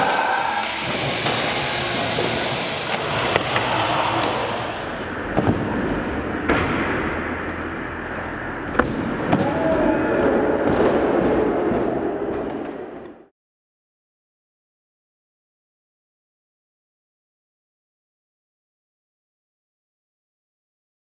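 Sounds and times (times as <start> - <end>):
skateboard wheels rolling: 0.0 - 9.4
skateboard clacks and landings: 0.0 - 9.5.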